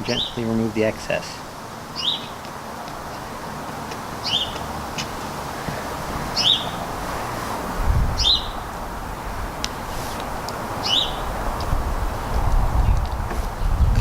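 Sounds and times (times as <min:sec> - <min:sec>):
songbird chirping: 0:00.0 - 0:01.0, 0:01.8 - 0:07.0, 0:08.2 - 0:08.8, 0:09.6 - 0:13.8
outdoor background hiss: 0:00.0 - 0:14.0.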